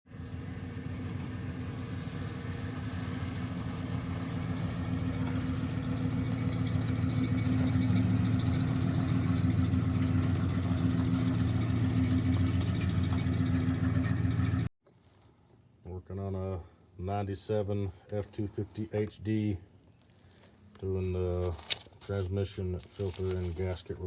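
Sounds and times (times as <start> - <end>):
truck engine idling: 0.1 - 14.7.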